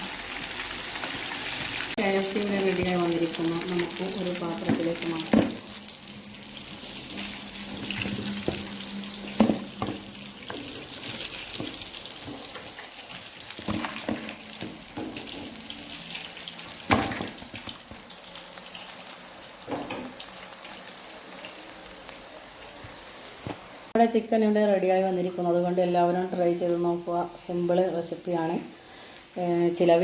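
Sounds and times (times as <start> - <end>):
chicken sizzling in oil: 0.0 - 24.0.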